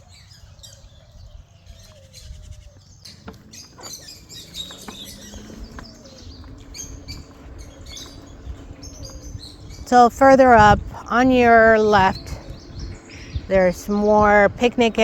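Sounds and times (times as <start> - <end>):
short high bird calls: 0.0 - 10.2
birds chirping and calling: 0.0 - 15.0
low hum rising in pitch: 0.0 - 15.0.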